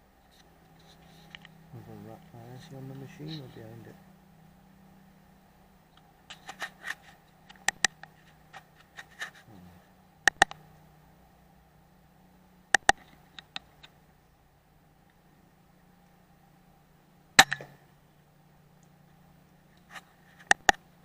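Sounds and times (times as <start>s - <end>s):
faint steady hum: 0.0s - 21.0s
sharp clicks: 5.9s - 8.7s, 10.2s - 10.6s, 12.7s - 14.0s.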